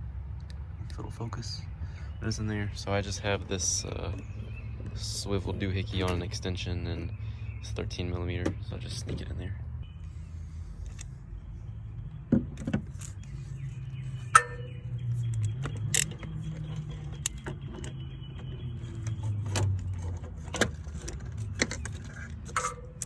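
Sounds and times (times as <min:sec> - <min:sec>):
metal tool clinks: 0:14.3 - 0:15.4.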